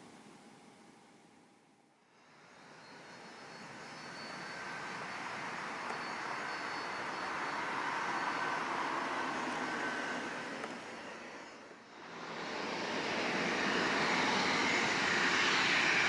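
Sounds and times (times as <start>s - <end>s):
jet engines powering up: 3.6s - 16.0s.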